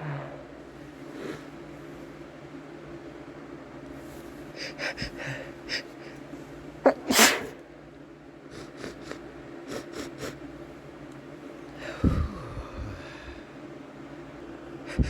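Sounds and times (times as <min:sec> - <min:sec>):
short sniffs: 0:01.1 - 0:01.6, 0:07.0 - 0:07.6
man sneezing: 0:06.9 - 0:07.6
quick catching inhales: 0:07.1 - 0:07.6.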